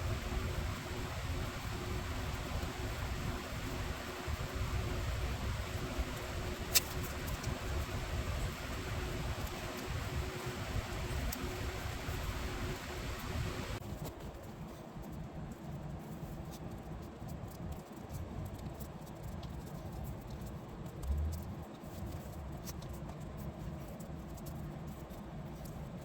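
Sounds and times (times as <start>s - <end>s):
low steady rumble: 0.0s - 13.8s, 20.8s - 21.7s.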